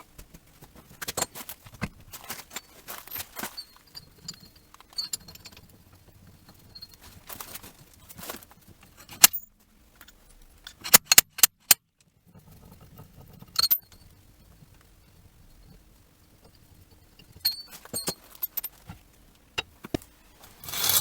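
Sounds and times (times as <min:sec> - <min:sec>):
metal tools clinking: 0:02.2 - 0:05.7, 0:17.4 - 0:18.8, 0:20.5 - 0:21.0.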